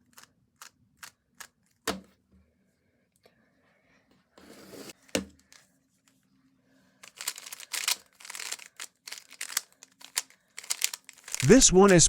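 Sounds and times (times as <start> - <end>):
plastic puzzle cube clicking: 0.0 - 2.0, 7.0 - 12.0.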